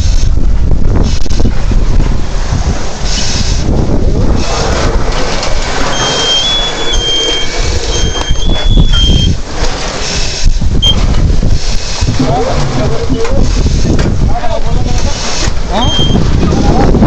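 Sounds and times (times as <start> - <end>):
loud steady rushing noise: 0.0 - 17.0
high electronic beeps: 5.9 - 9.4, 15.7 - 16.2.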